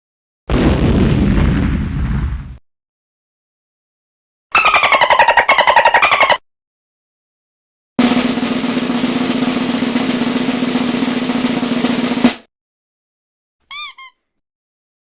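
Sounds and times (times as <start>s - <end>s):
snare drum roll: 8.0s - 12.5s.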